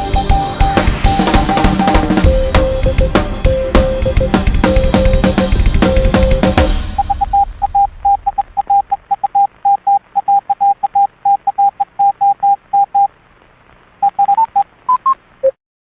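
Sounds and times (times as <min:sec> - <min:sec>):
morse code tone: 0:00.0 - 0:13.1
faint background hiss: 0:06.2 - 0:15.4.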